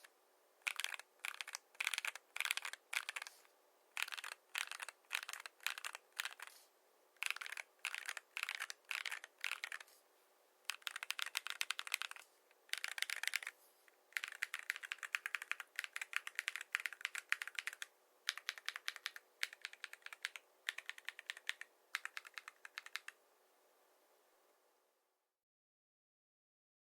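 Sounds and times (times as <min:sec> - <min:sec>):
typing on mechanical keyboard: 0:00.6 - 0:03.4, 0:04.0 - 0:06.6, 0:07.2 - 0:09.9, 0:10.7 - 0:13.6, 0:14.2 - 0:23.2.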